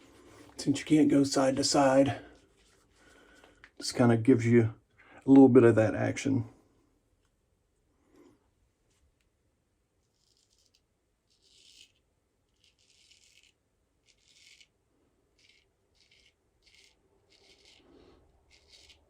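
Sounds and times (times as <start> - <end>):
straight razor scraping stubble: 10.0 - 19.0.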